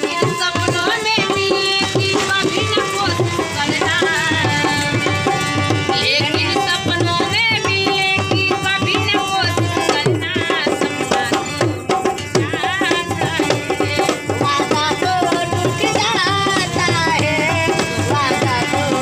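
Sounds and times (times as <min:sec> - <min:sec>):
hand drum beat: 0:00.0 - 0:19.0.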